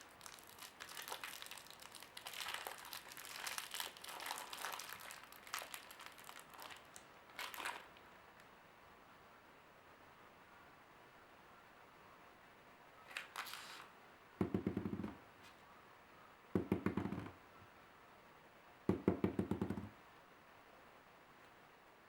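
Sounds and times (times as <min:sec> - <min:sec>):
crinkle: 0:00.0 - 0:08.5, 0:13.1 - 0:13.9.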